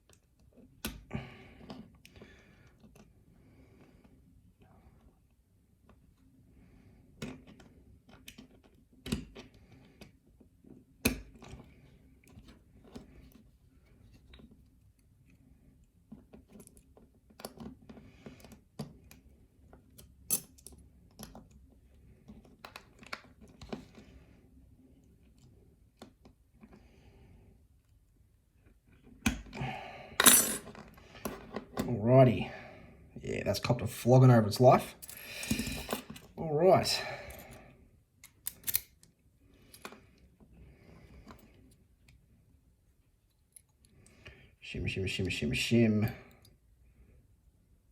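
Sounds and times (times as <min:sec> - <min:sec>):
metallic lock clicks and scrapes: 0:38.2 - 0:39.1.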